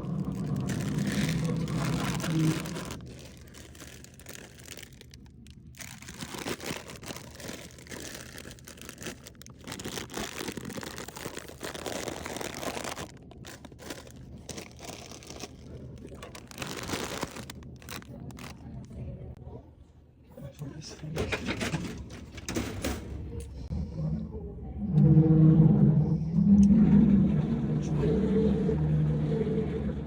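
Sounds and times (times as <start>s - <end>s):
plastic packaging crinkling: 0.0s - 18.8s.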